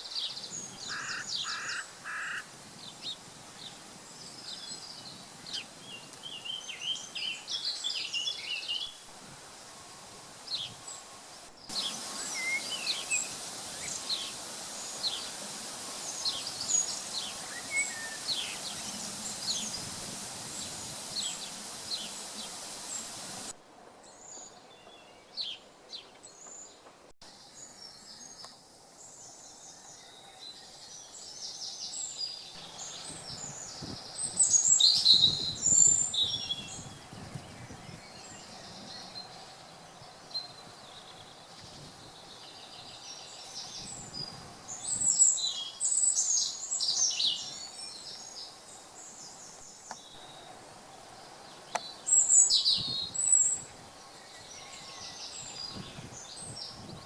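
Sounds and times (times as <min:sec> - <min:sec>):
birds chirping: 0:00.0 - 0:09.0, 0:10.5 - 0:23.5.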